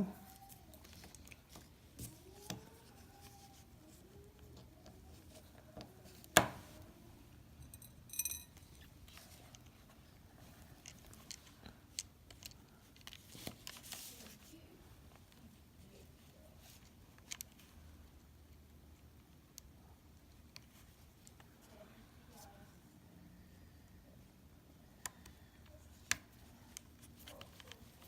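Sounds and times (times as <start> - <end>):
high metallic ring: 7.6 - 8.8.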